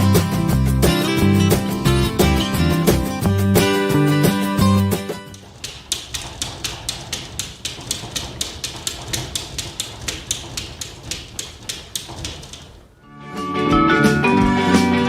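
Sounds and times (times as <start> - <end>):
music: 0.0 - 5.4, 13.0 - 15.0
rapid clicking: 3.6 - 13.0.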